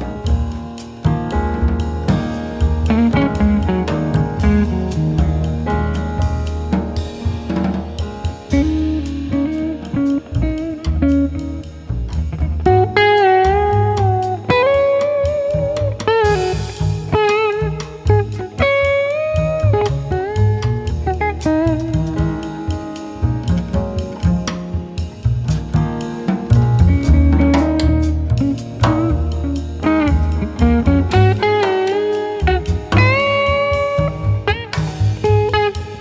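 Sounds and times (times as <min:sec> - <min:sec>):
blues guitar lead with band: 0:00.0 - 0:36.0.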